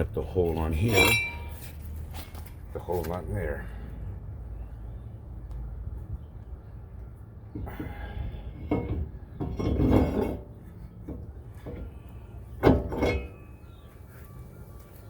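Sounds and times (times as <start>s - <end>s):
metal clinks and scraping: 0.5s - 2.6s, 8.7s - 10.6s, 12.8s - 13.5s.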